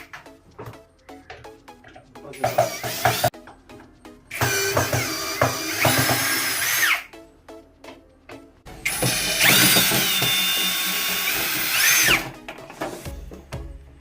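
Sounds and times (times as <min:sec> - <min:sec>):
background music: 0:00.0 - 0:14.0
power drill running: 0:02.4 - 0:03.3, 0:04.3 - 0:07.1, 0:08.8 - 0:12.3.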